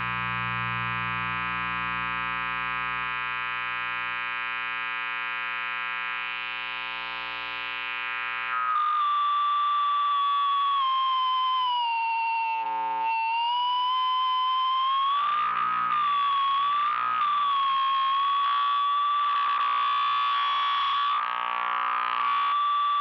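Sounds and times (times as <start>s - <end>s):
amplifier buzzing hum: 0.0s - 23.0s
high feedback whine: 0.0s - 23.0s.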